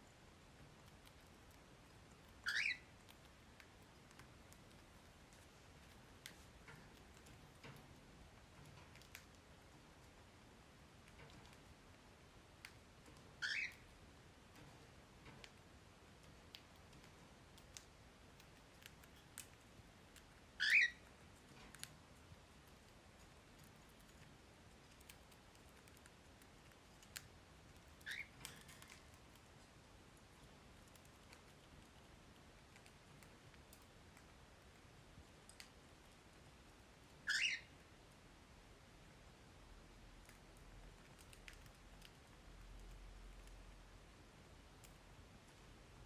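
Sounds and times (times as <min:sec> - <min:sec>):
parrots pecking seed clicks: 0:00.6 - 0:10.2, 0:10.8 - 0:35.9, 0:40.2 - 0:43.8
parrot chirp: 0:02.4 - 0:02.9, 0:13.4 - 0:14.0, 0:20.6 - 0:21.1, 0:28.0 - 0:28.6, 0:37.2 - 0:37.8
parrot chirp rising: 0:20.6 - 0:21.0, 0:37.2 - 0:37.7.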